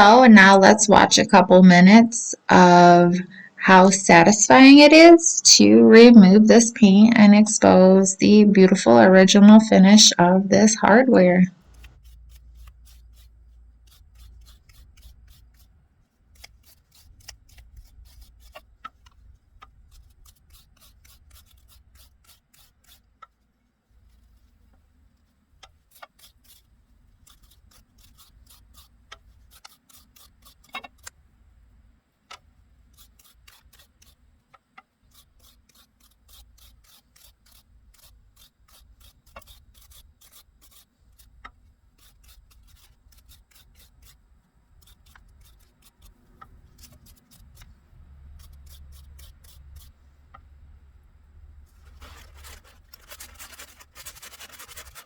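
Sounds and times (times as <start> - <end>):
wire brush scrubbing metal: 11.6 - 18.6, 19.8 - 23.1, 25.8 - 31.1, 32.9 - 34.2, 35.0 - 50.0, 51.7 - 55.0.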